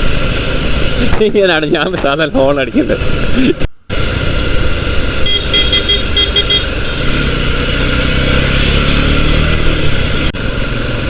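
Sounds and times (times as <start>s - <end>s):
road and wind noise: 0.0s - 11.0s
vehicle horn short toots: 5.2s - 6.7s.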